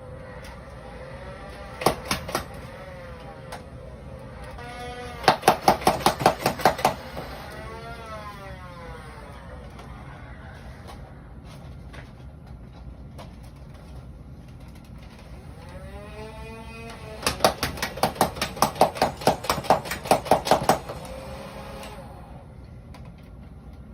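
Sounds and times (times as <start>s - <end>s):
toy blaster motor whine: 0.0s - 11.1s, 15.4s - 22.6s
toy blaster clacking shots: 1.4s - 3.7s, 4.3s - 9.0s, 16.9s - 22.0s.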